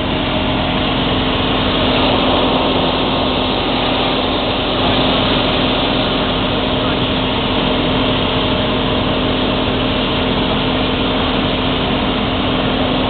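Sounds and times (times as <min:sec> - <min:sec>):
air rushing: 0:00.0 - 0:08.4
propeller engine droning: 0:00.0 - 0:13.0.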